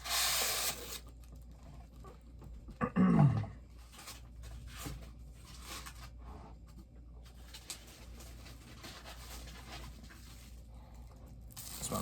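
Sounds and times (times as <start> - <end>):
packaging rustling and scraping: 3.8 - 10.7.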